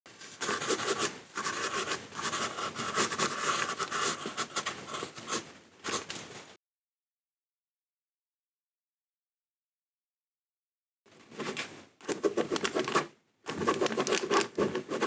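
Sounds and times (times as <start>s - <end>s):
pen scratching on paper: 0.4s - 6.0s, 12.1s - 15.0s.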